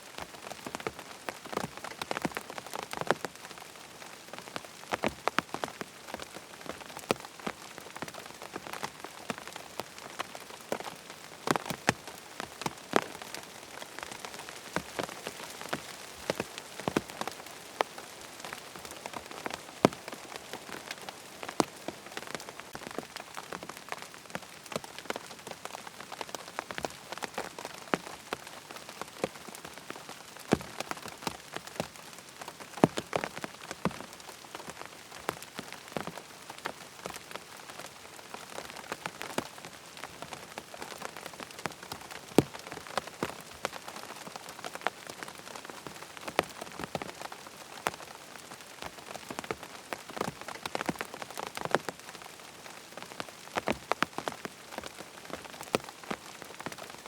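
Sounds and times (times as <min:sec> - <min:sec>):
rain pattering on a tent: 0:00.0 - 0:57.0.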